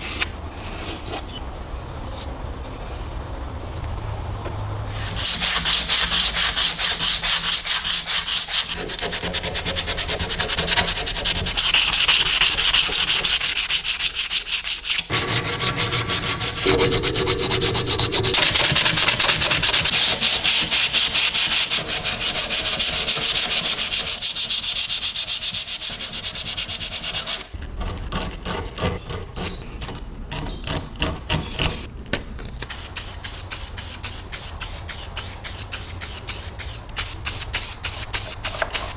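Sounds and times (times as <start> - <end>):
abrasive scrubbing rusty metal: 4.9 - 27.5.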